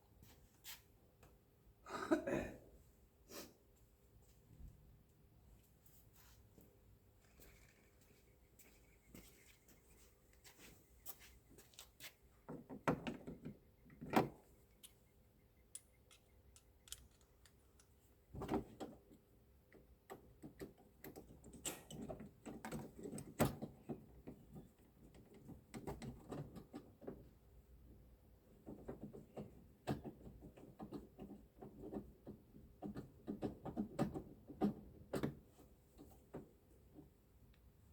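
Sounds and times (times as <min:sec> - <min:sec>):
tailgate parts clicking and rattling: 0:15.9 - 0:27.4, 0:28.4 - 0:37.4.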